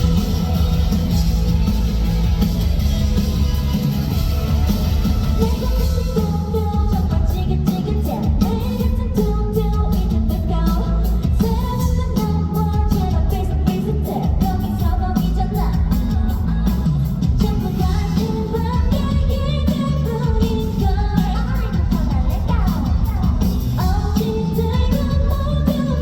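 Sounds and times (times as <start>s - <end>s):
live pop-rock band playing: 0.0s - 26.0s
woman singing lead vocal: 5.2s - 26.0s.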